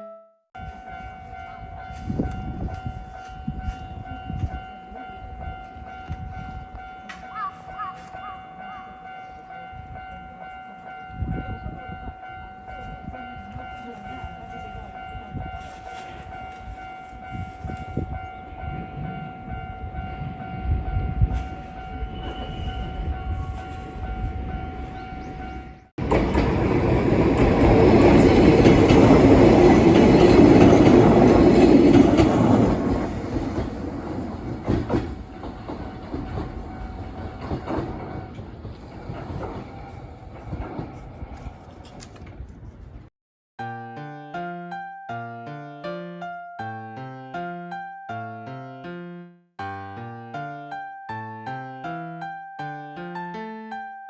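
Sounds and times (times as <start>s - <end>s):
level crossing bell ringing: 0.0s - 25.8s
train wheels clattering on rails: 26.0s - 43.0s.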